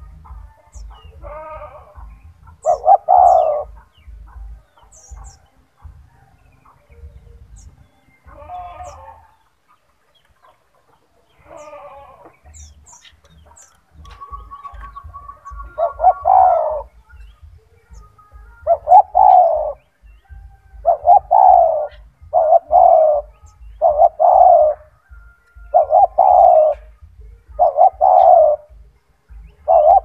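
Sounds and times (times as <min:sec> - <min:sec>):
dove cooing: 0:00.0 - 0:09.6, 0:10.4 - 0:30.0
faint high chirps: 0:11.3 - 0:30.0.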